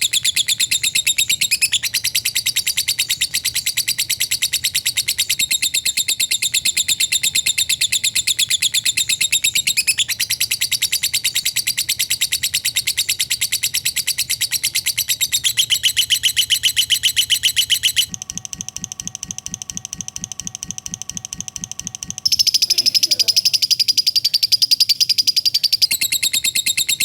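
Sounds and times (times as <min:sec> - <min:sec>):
bird chattering trill: 0:00.0 - 0:18.1, 0:20.9 - 0:27.0
quiet fast-pulsing sound: 0:16.5 - 0:25.8.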